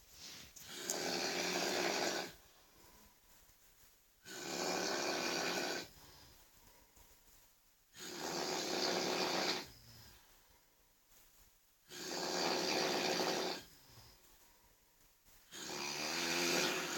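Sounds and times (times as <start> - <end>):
person snoring loudly: 0.7 - 2.4, 4.2 - 5.9, 8.0 - 9.8, 11.9 - 13.7, 15.5 - 16.9.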